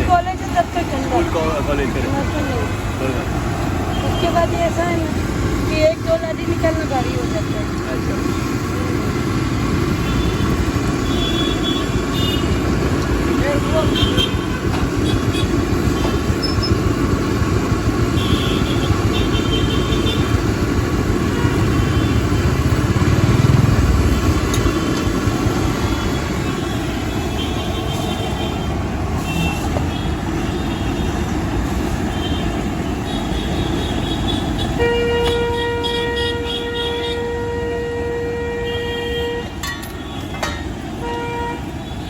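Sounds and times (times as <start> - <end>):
street traffic rumbling: 0.0 - 42.0
vehicle passing close: 22.2 - 26.4.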